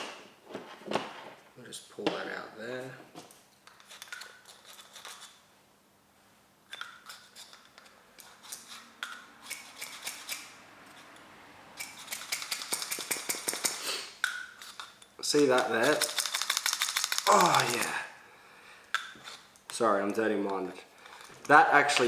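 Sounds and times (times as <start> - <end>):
rapid clicks: 15.6 - 17.9.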